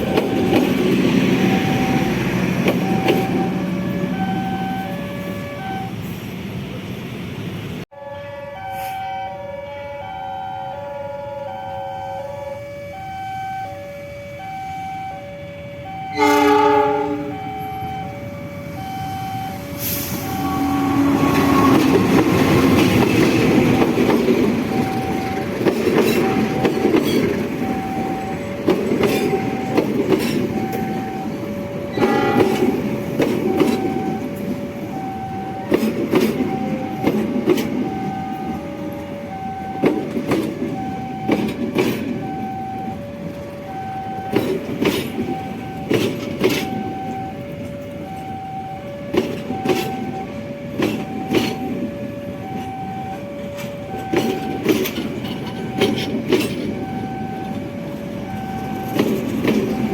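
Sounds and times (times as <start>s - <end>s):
train wheels clacking: 0.0s - 3.6s, 20.2s - 42.3s, 44.2s - 48.2s, 49.0s - 59.9s
two-tone crossing alarm chime: 0.0s - 5.0s, 10.0s - 21.7s, 23.4s - 32.8s, 33.4s - 59.9s.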